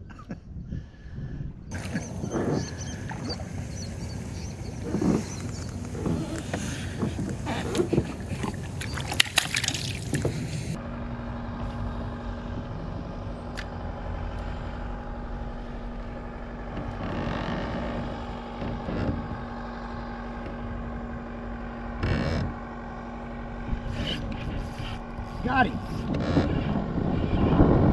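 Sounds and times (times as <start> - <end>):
handling knocks and rustling: 1.7 - 10.8
boat motor running: 1.7 - 27.9.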